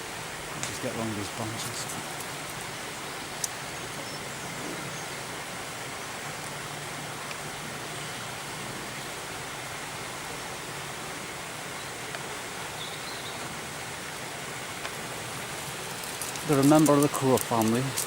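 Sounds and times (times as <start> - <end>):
outdoor background hiss: 0.0 - 18.0
faint chirp: 2.8 - 5.3, 12.7 - 13.5
faint ticks: 7.2 - 7.5, 12.0 - 12.3, 14.8 - 15.0, 15.9 - 18.0.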